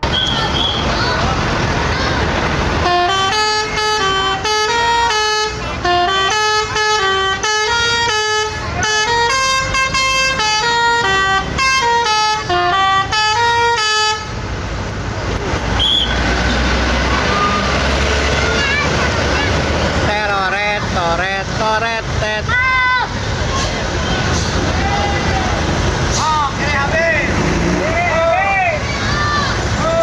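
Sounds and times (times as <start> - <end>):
musical air horn tune: 2.8 - 14.3.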